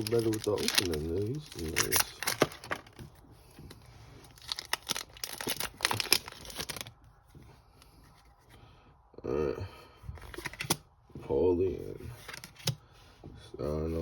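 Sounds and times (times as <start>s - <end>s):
wrapper tearing and crinkling: 0.0s - 3.0s, 4.2s - 7.0s.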